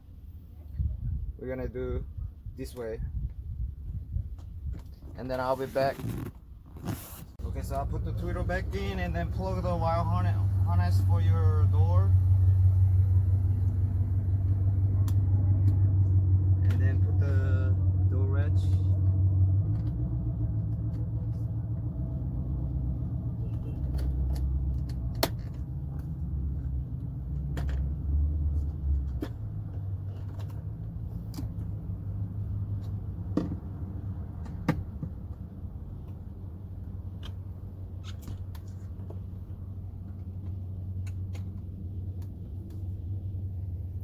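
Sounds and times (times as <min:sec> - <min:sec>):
steady low rumble: 0:02.0 - 0:05.9, 0:07.3 - 0:44.0.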